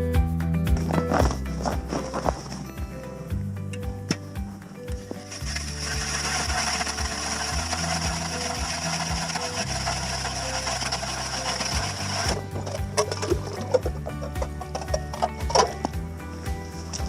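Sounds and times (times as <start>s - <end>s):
ice auger motor whine and cutting: 5.2s - 17.0s.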